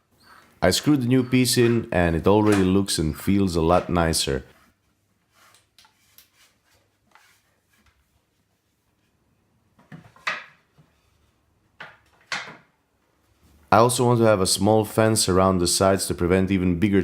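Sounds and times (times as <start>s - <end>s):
wooden knocks and clatter: 9.8s - 11.0s, 11.8s - 12.7s.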